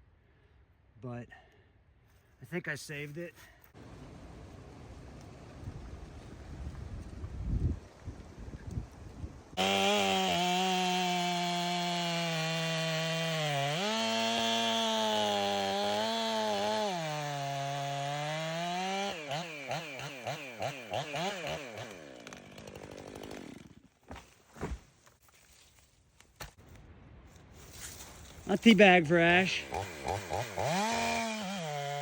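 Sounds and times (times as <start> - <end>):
chainsaw cutting tree trunk: 9.6 - 24.8, 29.2 - 32.0.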